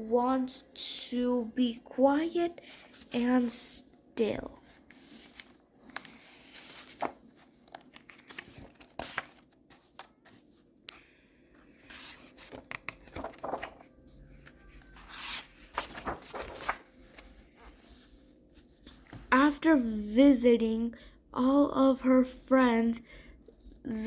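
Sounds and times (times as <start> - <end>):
book pages turning: 4.6 - 11.0, 11.7 - 19.3.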